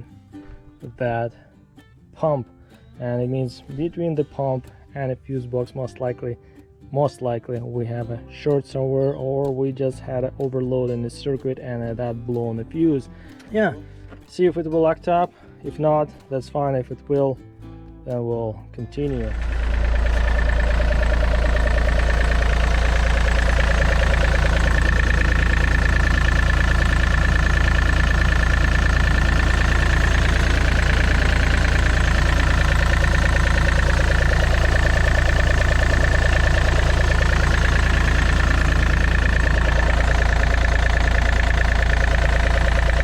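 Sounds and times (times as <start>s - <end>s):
diesel engine running: 19.0s - 43.0s
steady whine: 19.1s - 43.0s.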